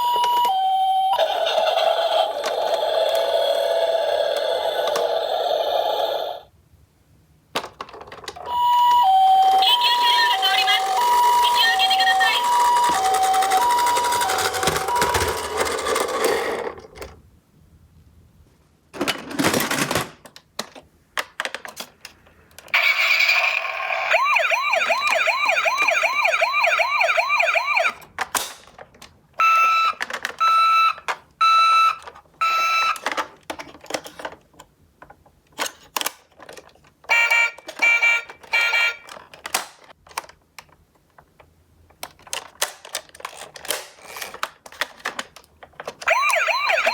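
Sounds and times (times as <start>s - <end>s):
toy ambulance siren: 0.0s - 6.1s, 8.4s - 16.1s, 22.8s - 28.0s, 29.4s - 33.1s, 37.1s - 39.2s, 46.0s - 46.9s
plastic clicks and clatter: 19.0s - 22.7s, 29.9s - 30.4s, 32.9s - 46.9s.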